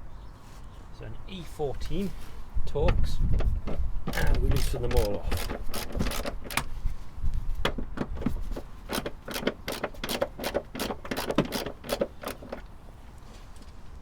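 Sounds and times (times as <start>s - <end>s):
socket ratchet clicking: 4.1s - 6.7s, 8.9s - 12.6s.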